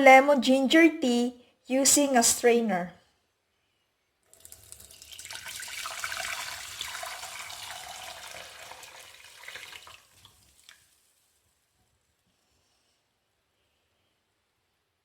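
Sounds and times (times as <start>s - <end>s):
liquid dripping: 4.3s - 11.2s
tea pouring through a strainer: 4.3s - 11.5s.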